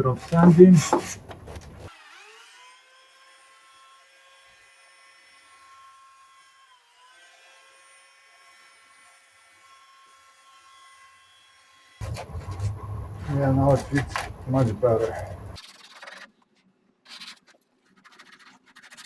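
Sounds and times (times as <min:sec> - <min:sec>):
small electric motor whine: 0:01.2 - 0:06.9, 0:12.0 - 0:15.6.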